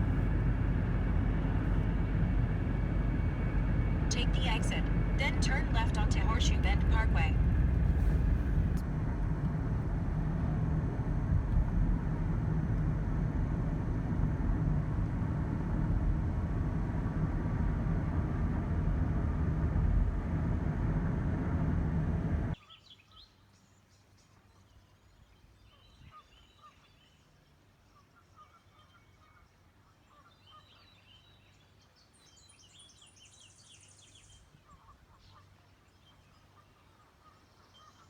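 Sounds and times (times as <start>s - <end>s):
car road and engine noise: 0.0s - 22.6s.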